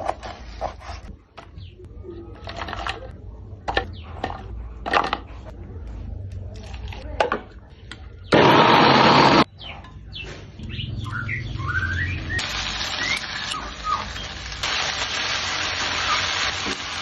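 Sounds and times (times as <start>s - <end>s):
birds chirping: 9.4s - 14.5s
food sizzling in hot oil: 12.4s - 17.0s.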